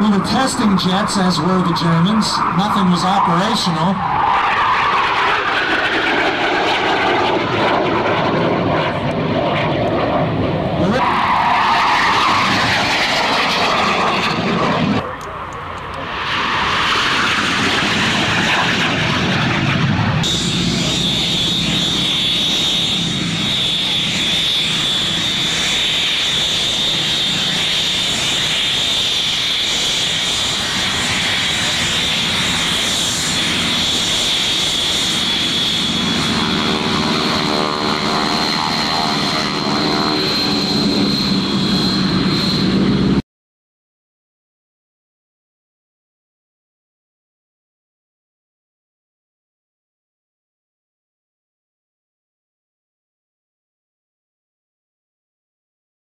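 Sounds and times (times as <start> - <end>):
jet engine whine: 0.0 - 43.2
jet passing rumble: 0.0 - 43.2.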